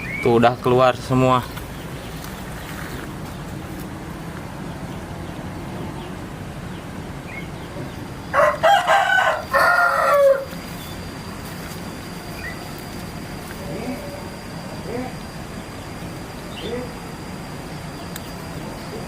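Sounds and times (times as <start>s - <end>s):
low background hum: 0.0s - 19.0s
rooster crowing: 8.2s - 11.3s.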